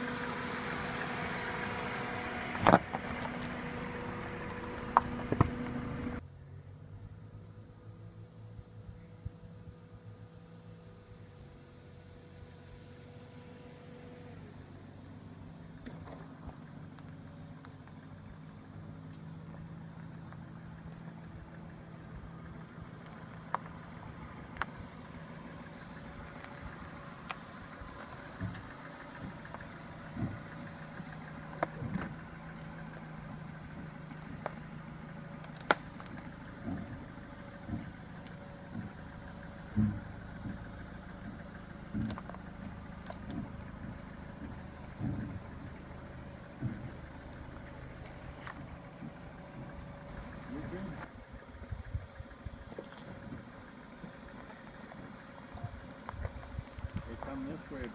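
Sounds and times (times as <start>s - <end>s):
car engine running at low revs: 0.0s - 57.9s
suspension knocks and thumps: 22.6s - 55.0s.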